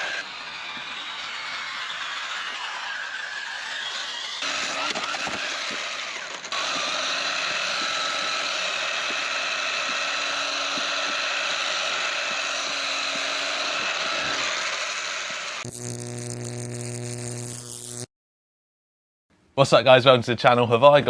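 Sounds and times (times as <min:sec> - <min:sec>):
rc car motor whining: 0:00.0 - 0:18.1.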